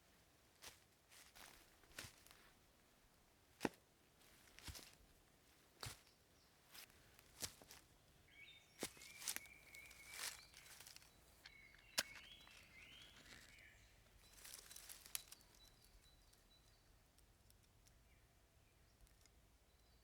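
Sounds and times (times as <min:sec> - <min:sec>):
faint bird chirps: 0:07.7 - 0:20.0.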